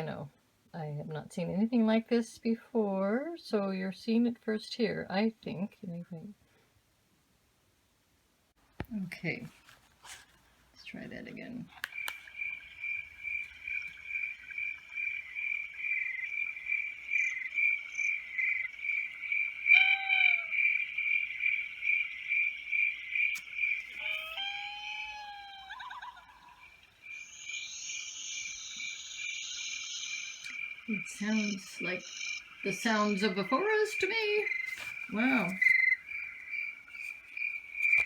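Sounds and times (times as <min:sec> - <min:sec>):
bird call: 0:11.8 - 0:38.0
steady pulsing chirp: 0:11.9 - 0:24.2, 0:25.8 - 0:38.0
high buzzing hiss: 0:26.7 - 0:38.0.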